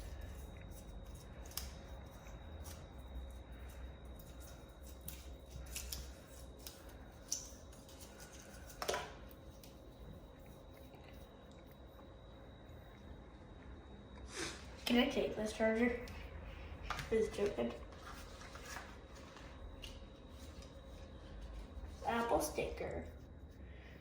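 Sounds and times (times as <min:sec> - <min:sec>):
paper and cardboard crinkling: 0:17.0 - 0:19.6.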